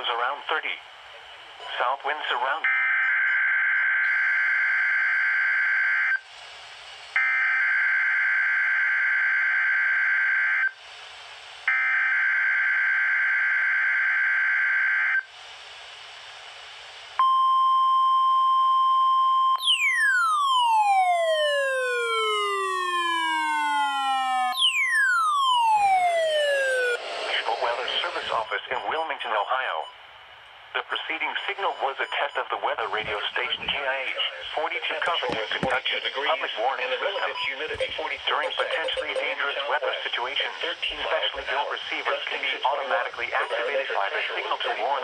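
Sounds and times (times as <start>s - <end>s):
radio hiss: 0.0s - 2.7s, 26.0s - 29.9s, 30.6s - 45.0s
steady warning alarm tone: 2.6s - 6.2s, 19.6s - 30.1s, 31.1s - 34.7s, 37.0s - 45.0s
digital data tone bursts: 31.2s - 33.5s, 37.0s - 39.9s.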